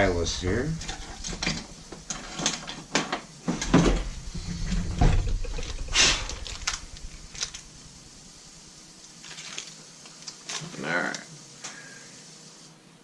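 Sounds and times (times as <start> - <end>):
short scrape: 4.0 - 7.8.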